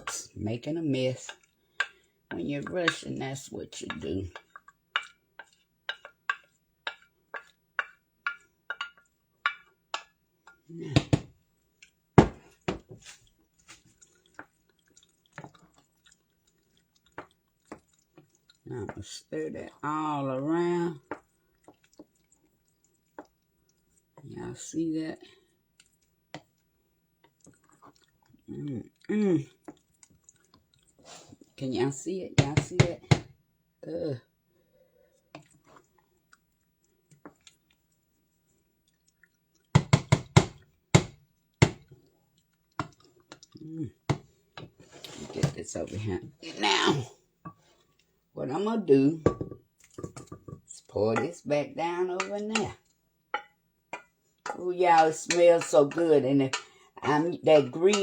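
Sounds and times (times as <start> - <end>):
wet squishing of macaroni: 0.0 - 31.9, 32.9 - 48.3, 48.9 - 51.5
metal utensil knocking on pot: 3.9 - 10.1, 32.4 - 33.3, 49.2 - 51.3, 53.4 - 54.6
small wet clicks: 13.0 - 19.0, 20.9 - 24.5, 25.3 - 31.5, 35.0 - 39.8, 41.2 - 44.5.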